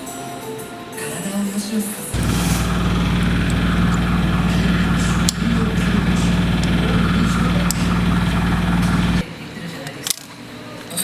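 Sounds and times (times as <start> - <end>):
two-stroke engine idling: 2.2 - 9.2.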